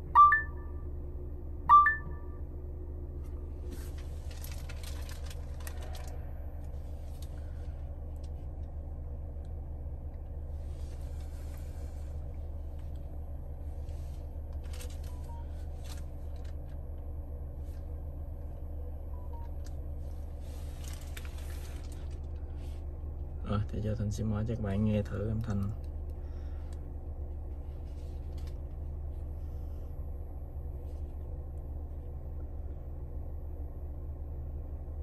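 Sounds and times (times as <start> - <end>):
short soft beeps: 0.0 - 0.7, 1.7 - 2.3
car cabin hum: 0.0 - 35.0.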